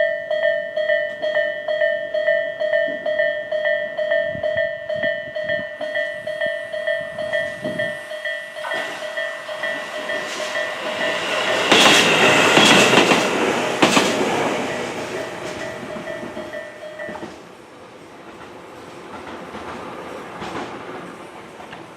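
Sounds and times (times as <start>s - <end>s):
level crossing warning bell dinging: 0.0s - 13.9s, 14.6s - 17.4s
train passing: 0.4s - 21.9s
wheels clacking over rail joints: 8.2s - 21.9s.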